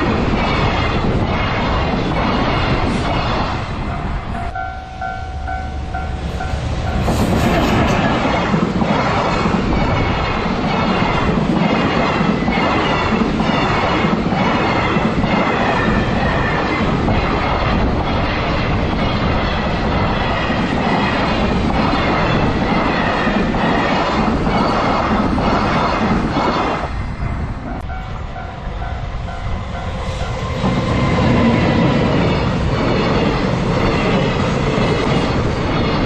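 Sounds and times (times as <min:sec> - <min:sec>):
freight train passing: 0:00.0 - 0:36.0
pulsing ringing tone: 0:03.9 - 0:07.0, 0:27.7 - 0:30.5.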